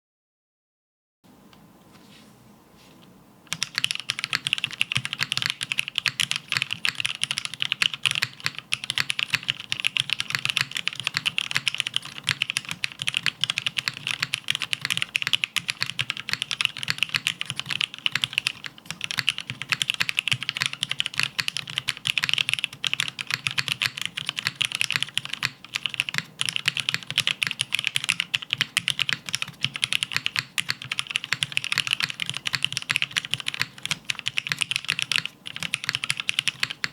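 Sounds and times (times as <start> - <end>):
mechanical keyboard typing: 3.5 - 36.9.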